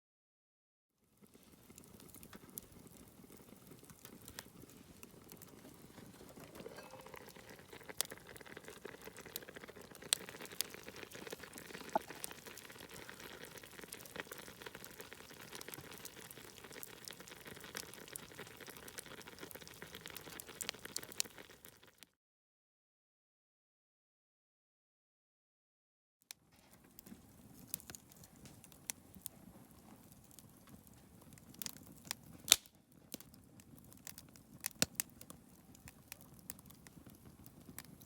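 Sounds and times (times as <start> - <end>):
food simmering and sizzling in pan: 1.1 - 22.0
sharp pops and crackles: 1.2 - 22.0, 26.3 - 38.0.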